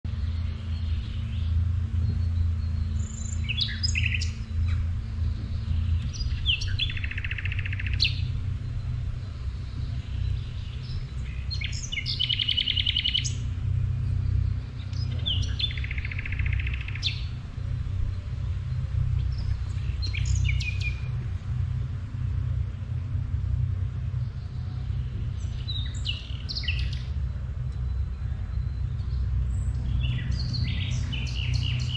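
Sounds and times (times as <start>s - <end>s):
songbird chirps and buzzing trill: 0.0s - 31.9s
steady low rumble: 0.0s - 31.9s.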